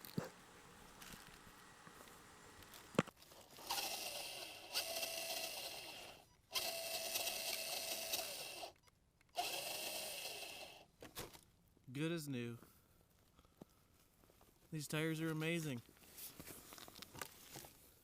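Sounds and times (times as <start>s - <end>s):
electric motor whining: 3.6s - 8.8s, 9.4s - 10.8s.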